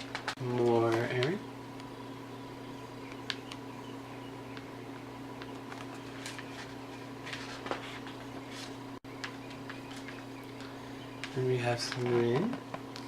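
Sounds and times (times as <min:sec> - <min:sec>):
glossy pages rustling and turning: 0:00.0 - 0:01.3, 0:05.4 - 0:13.0
low electrical hum: 0:00.0 - 0:13.0.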